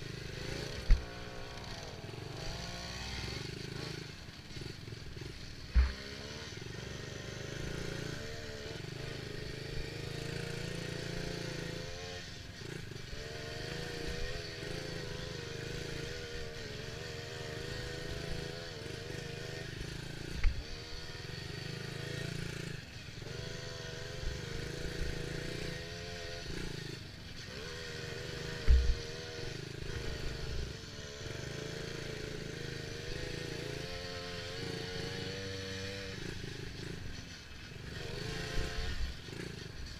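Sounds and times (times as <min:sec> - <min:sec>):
dirt bike engine revving: 0:00.0 - 0:39.9
sharp thumps: 0:05.7 - 0:06.0, 0:28.6 - 0:29.0.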